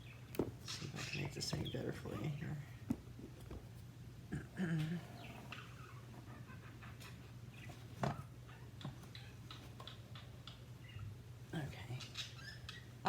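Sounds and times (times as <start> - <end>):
steady low hum: 0.0 - 13.0
pet bird chirping: 4.9 - 6.2, 7.5 - 13.0.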